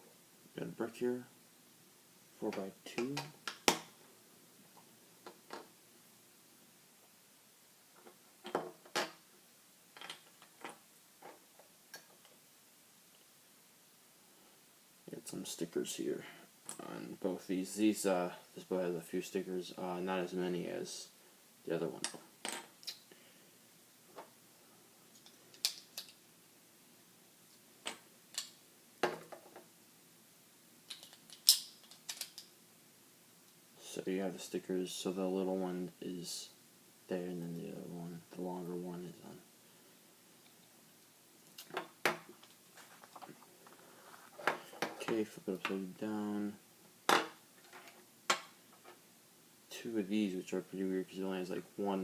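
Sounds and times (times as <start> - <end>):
plastic pieces clicking and tapping: 30.9 - 32.5.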